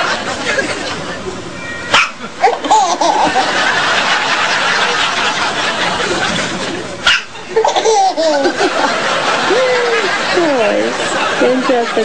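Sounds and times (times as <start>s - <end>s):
baby laughing: 2.0s - 3.5s, 7.1s - 8.8s.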